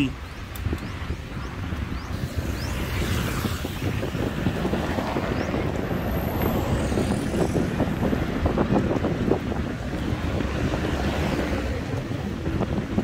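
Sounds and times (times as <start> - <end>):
wind buffeting microphone: 0.0 - 13.0.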